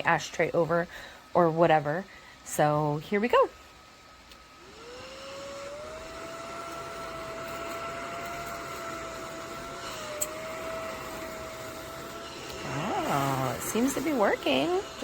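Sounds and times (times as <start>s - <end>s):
mini vacuum whining: 4.3s - 15.0s.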